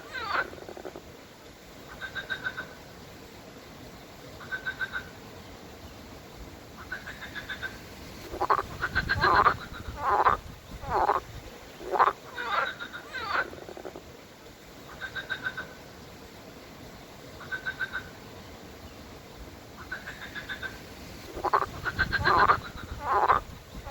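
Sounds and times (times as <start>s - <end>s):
frogs croaking: 0.0s - 1.2s, 1.8s - 3.0s, 4.3s - 5.4s, 6.7s - 16.0s, 17.3s - 18.4s, 19.7s - 23.9s.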